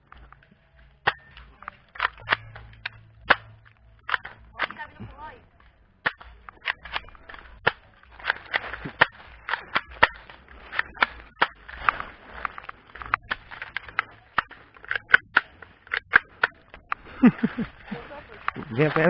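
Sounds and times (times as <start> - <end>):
airsoft gun shots: 1.0 - 5.2.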